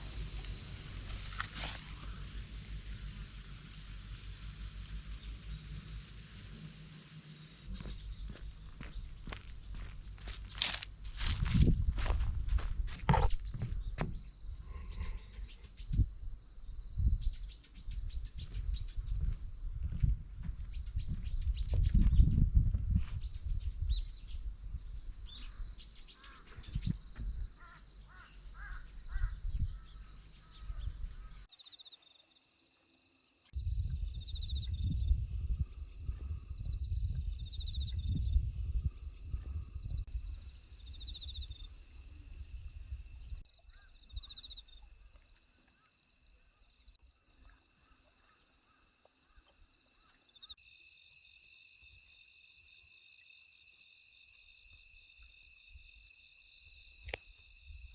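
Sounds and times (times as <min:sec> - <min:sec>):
pulsing insect trills: 0:00.0 - 0:17.6, 0:24.5 - 0:57.9
wind rumbling on microphone: 0:07.7 - 0:27.7, 0:28.7 - 0:31.4, 0:33.6 - 0:44.9
bird calls: 0:43.6 - 0:45.0.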